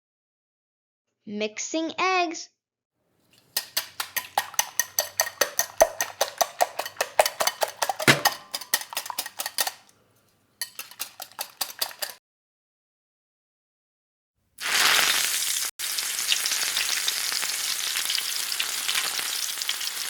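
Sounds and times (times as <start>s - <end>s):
whisk clicking against bowl: 3.3s - 12.2s.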